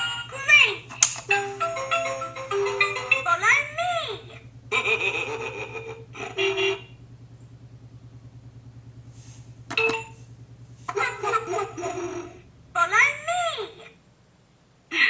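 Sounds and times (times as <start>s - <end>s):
toy recorded voice: 0.0s - 4.4s, 11.0s - 13.9s
steady low buzz: 0.0s - 14.9s.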